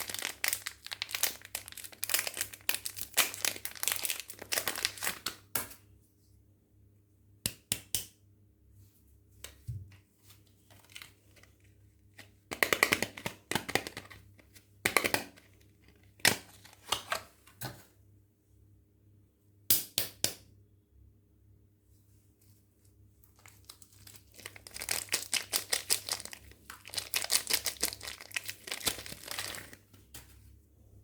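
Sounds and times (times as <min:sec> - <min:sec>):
packaging crinkling and snapping: 0:00.0 - 0:05.4, 0:23.2 - 0:29.9.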